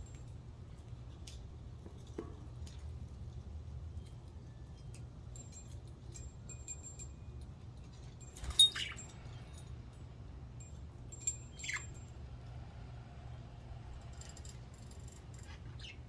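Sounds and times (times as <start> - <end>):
budgies chirping: 15.8 - 16.0.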